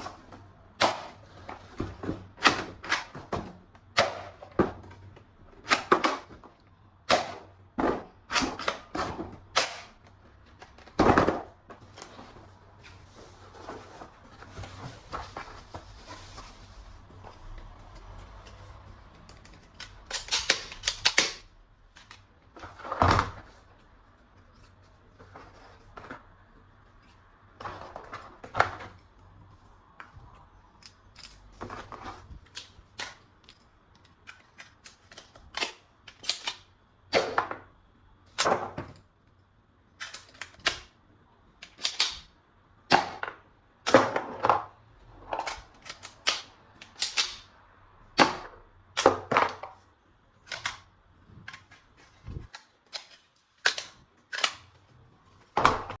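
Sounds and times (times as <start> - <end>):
toy gun plastic clicks and snaps: 19.3 - 22.2, 32.5 - 37.4, 40.0 - 40.9, 41.6 - 42.3, 45.4 - 47.5, 50.4 - 50.8, 52.5 - 54.7.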